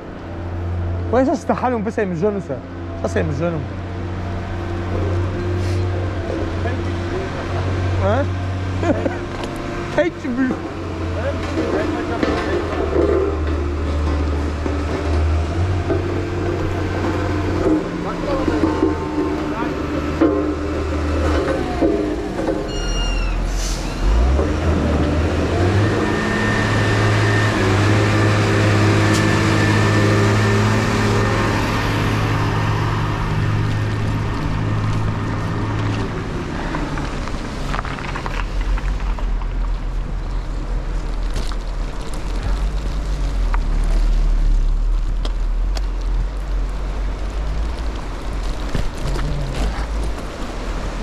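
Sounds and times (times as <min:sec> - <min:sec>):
wind rumbling on microphone: 0:29.6 - 0:51.0.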